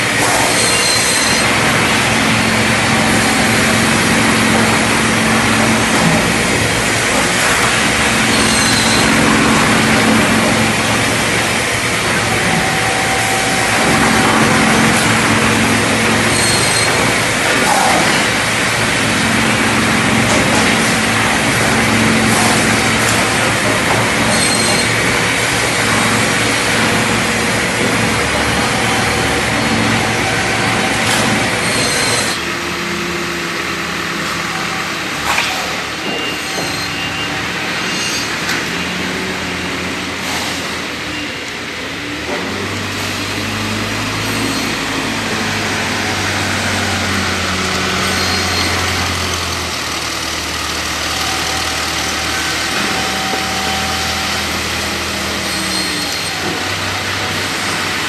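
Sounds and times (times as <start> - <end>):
factory machinery din: 0.0 - 58.0.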